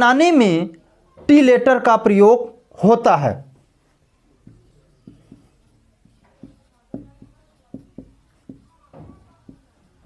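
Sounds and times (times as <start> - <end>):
writing taps and scrapes on board: 3.6 - 10.0.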